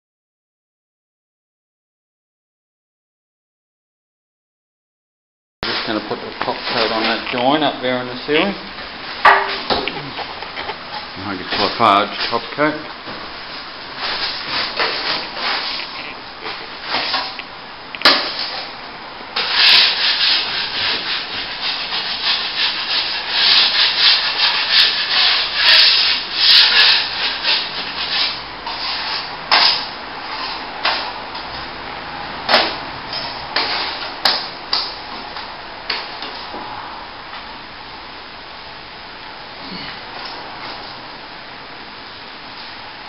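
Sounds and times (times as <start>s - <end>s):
trowel scraping plaster: 14.1s - 17.3s, 19.4s - 31.1s.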